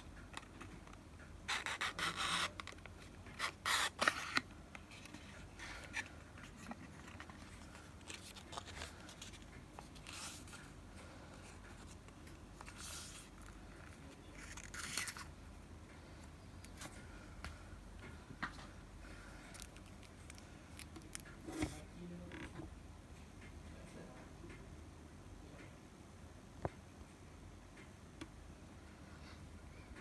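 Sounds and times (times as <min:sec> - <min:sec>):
packaging scrapes and rustles: 0:03.4 - 0:10.8, 0:12.6 - 0:15.3.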